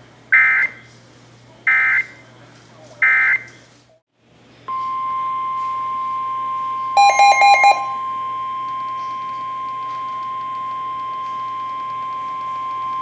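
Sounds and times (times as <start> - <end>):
steady piercing alarm tone: 4.7 - 13.0.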